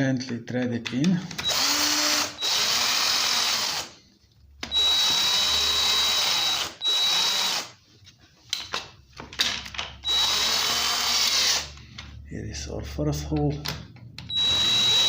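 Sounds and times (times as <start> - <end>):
cordless drill motor whining: 1.4 - 3.9, 4.6 - 7.7, 10.0 - 11.7, 14.3 - 15.0.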